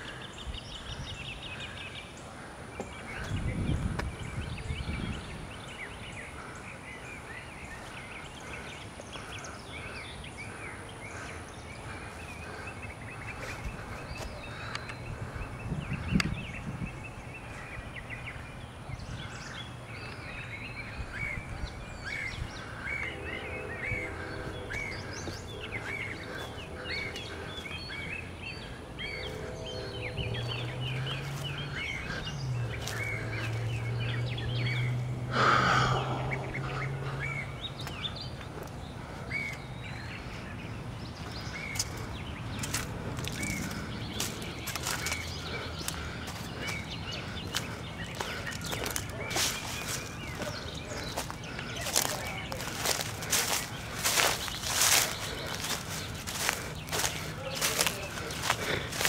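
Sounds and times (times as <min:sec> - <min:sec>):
birds chirping and singing: 0:00.0 - 0:59.0
low hum with tones: 0:17.3 - 0:43.1.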